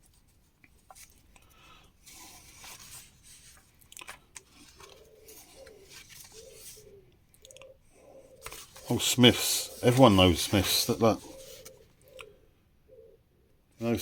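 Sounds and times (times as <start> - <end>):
magazine pages rustling: 0.0 - 7.0, 8.2 - 11.9.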